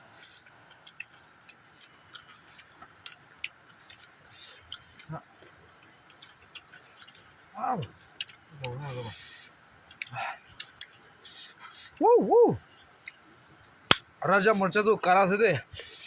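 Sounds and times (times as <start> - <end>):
insects chirring: 0.0 - 16.0.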